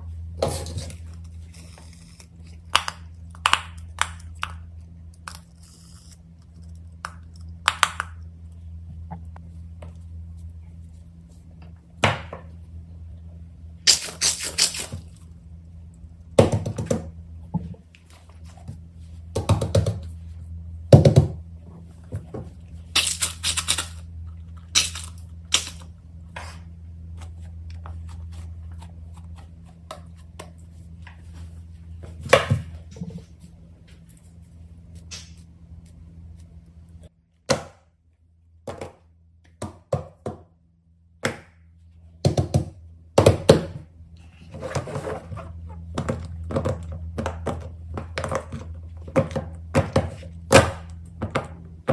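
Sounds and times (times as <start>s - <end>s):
steady low hum: 0.0s - 51.9s
fidget toys thunking and rattling: 16.4s - 17.8s, 19.3s - 20.1s, 20.9s - 21.4s, 44.5s - 51.9s.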